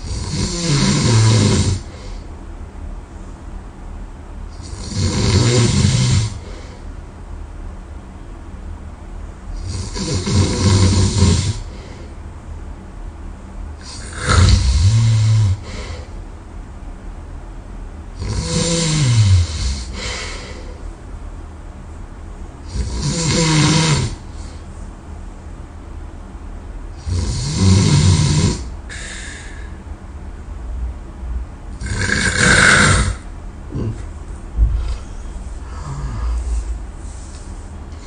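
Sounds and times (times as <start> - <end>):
person snoring loudly: 0.0 - 1.9, 4.6 - 6.5, 9.6 - 11.8, 13.8 - 15.9, 18.2 - 20.5, 22.7 - 24.2, 27.0 - 29.4, 31.8 - 34.0, 35.6 - 36.6
quiet breathing: 19.7 - 20.9, 28.9 - 29.8, 33.7 - 38.0.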